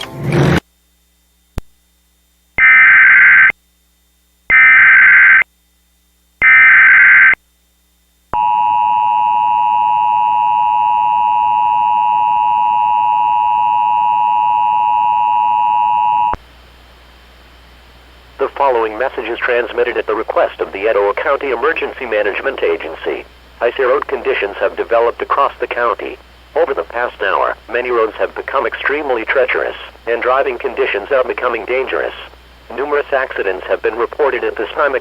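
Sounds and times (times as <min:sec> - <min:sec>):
warbling data tone bursts: 0:02.6 - 0:03.5, 0:04.5 - 0:05.4, 0:06.4 - 0:07.4.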